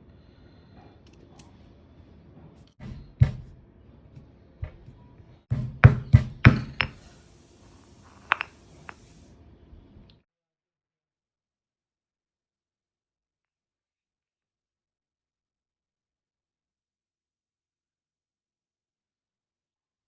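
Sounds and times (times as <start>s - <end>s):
knocks and clinks of objects: 5.9s - 7.1s.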